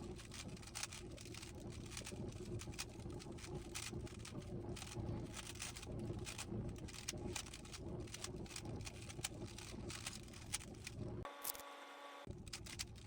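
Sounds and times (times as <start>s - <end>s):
plastic puzzle cube clicking: 12.5s - 13.0s.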